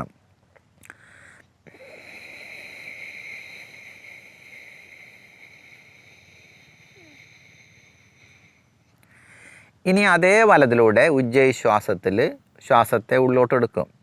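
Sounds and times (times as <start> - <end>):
breathy exhalation hiss: 0.8 - 9.8.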